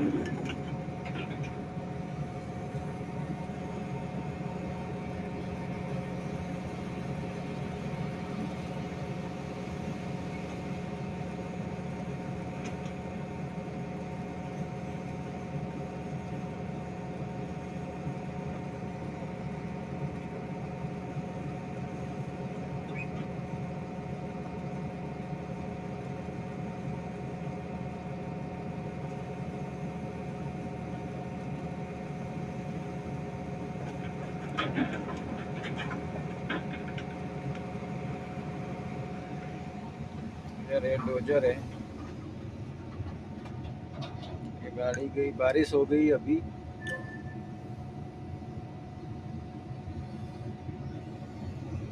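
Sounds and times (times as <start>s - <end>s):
diesel engine droning: 0.0s - 18.0s, 28.5s - 51.9s.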